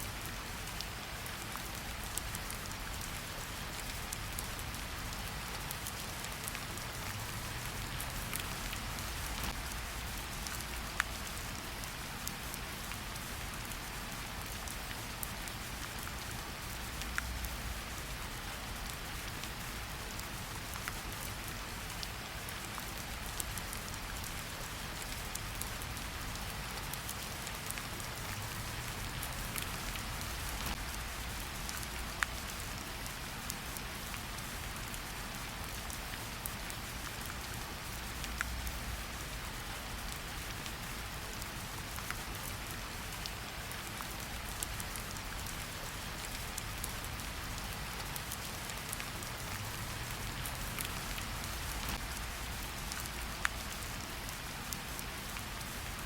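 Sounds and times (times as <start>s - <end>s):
rain falling on forest: 0.0s - 56.0s.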